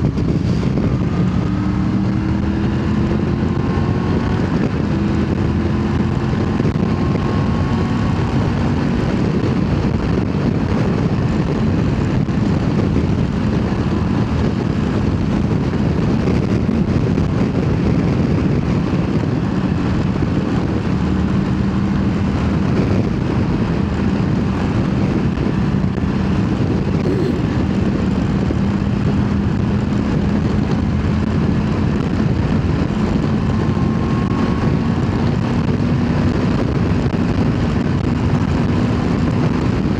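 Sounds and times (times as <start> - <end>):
motorcycle engine running: 0.0 - 39.9
wind and road noise: 0.0 - 39.9.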